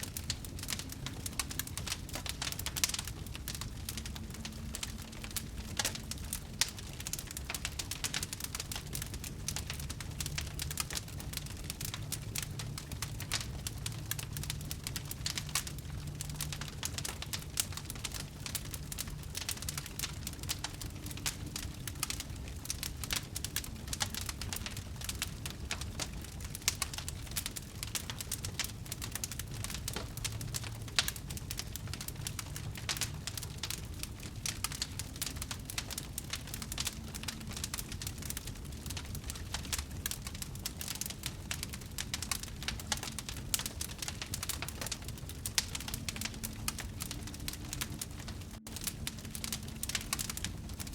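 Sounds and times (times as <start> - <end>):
low rumble of flames: 0.0 - 50.9
wood fire crackling and popping: 0.0 - 50.9.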